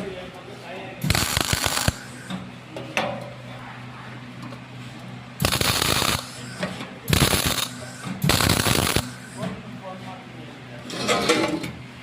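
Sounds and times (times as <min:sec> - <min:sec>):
steady low hum: 0:00.0 - 0:12.0
welding arc crackling: 0:01.0 - 0:02.2, 0:05.4 - 0:09.2.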